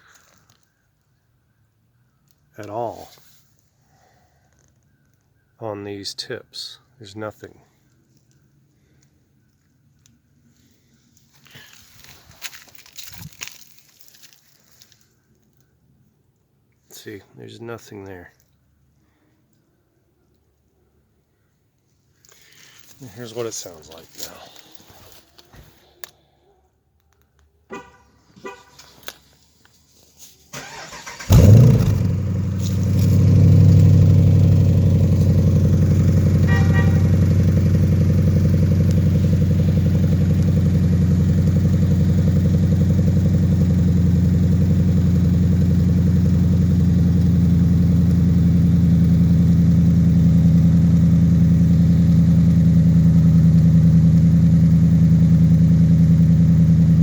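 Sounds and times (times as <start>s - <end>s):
faint clicks: 7.8s - 10.2s
car engine starting and idling: 30.5s - 57.0s.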